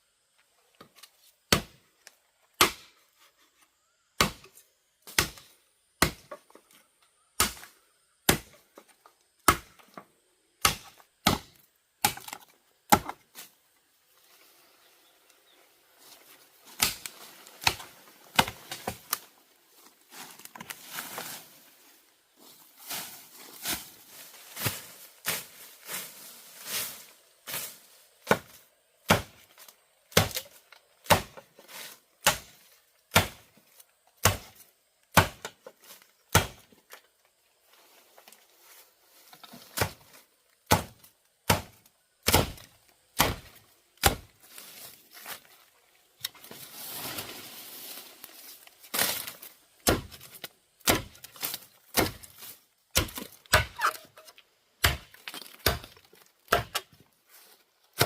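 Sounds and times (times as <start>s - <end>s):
blade chopping bamboo: 1.5s - 1.8s, 2.6s - 3.0s, 4.2s - 6.4s, 7.4s - 8.6s, 9.4s - 9.8s, 10.6s - 13.2s, 16.8s - 19.2s, 28.2s - 31.5s, 32.2s - 33.5s, 34.2s - 35.7s, 36.3s - 36.7s, 39.7s - 44.3s, 48.9s - 57.0s
rustling: 44.4s - 50.5s.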